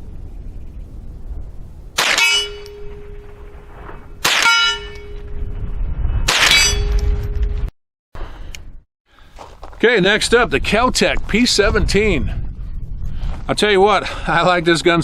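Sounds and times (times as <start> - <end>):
rifle shots: 2.0 - 3.4, 4.2 - 5.1, 6.3 - 6.9
steel target clanging: 2.0 - 3.5, 4.2 - 5.3, 6.3 - 7.6.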